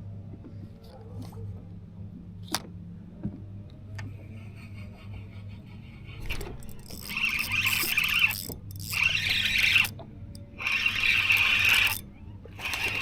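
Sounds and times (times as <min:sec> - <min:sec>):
steady low hum: 0:00.0 - 0:13.0
fishing reel whirring: 0:06.2 - 0:13.0.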